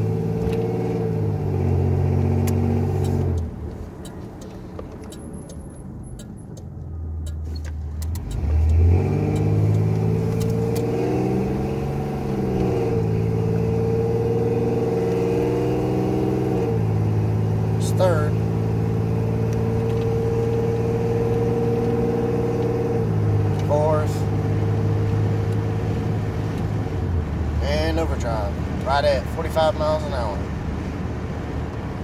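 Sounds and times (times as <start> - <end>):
car engine accelerating: 0.0 - 32.0.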